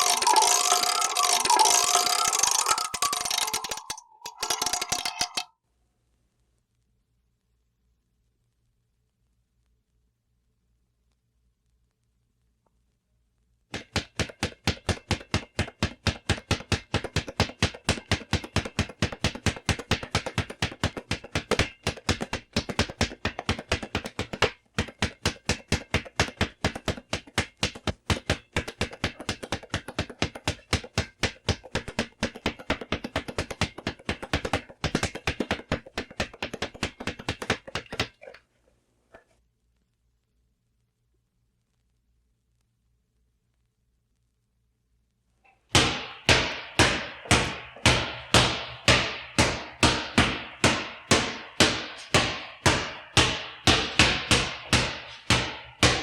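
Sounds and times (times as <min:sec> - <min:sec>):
punching bag being hit: 0:45.7 - 0:56.0.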